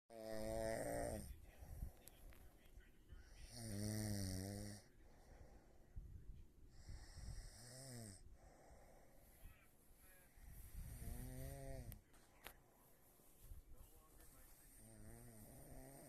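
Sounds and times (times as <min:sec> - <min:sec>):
woman snoring: 0:00.1 - 0:01.3, 0:03.5 - 0:04.9, 0:06.8 - 0:08.8, 0:10.8 - 0:12.0, 0:14.8 - 0:16.0.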